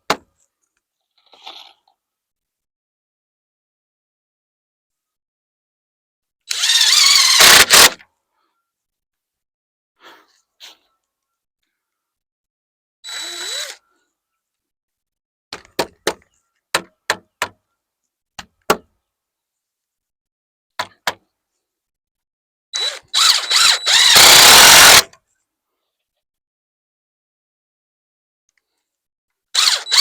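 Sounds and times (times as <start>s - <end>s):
cordless drill driving screw: 6.5s - 8.0s, 13.1s - 13.8s, 22.8s - 25.1s, 29.6s - 30.0s.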